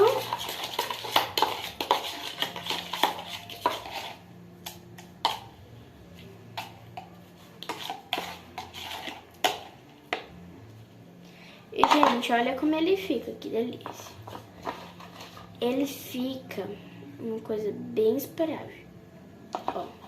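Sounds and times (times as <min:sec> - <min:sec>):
spoon clinking and scraping bowl: 0:00.0 - 0:05.5, 0:06.5 - 0:09.8, 0:11.8 - 0:12.3, 0:13.8 - 0:15.6.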